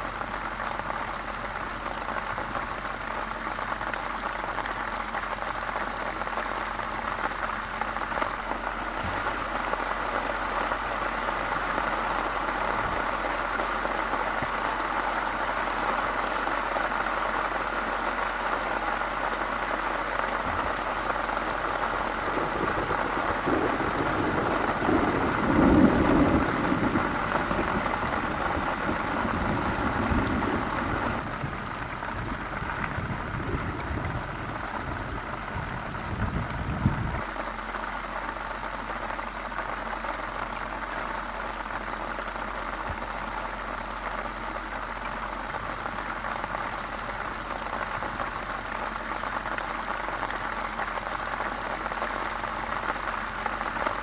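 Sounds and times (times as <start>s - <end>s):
heavy rain falling: 0.0s - 54.0s
low rumble: 21.8s - 37.4s.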